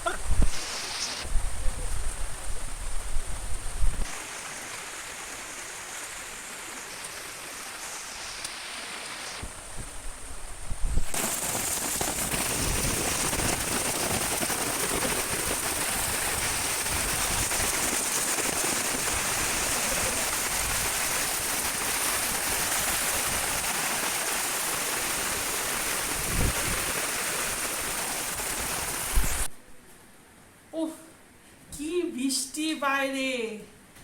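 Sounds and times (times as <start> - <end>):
heavy rain falling: 4.1 - 9.4, 11.1 - 29.5.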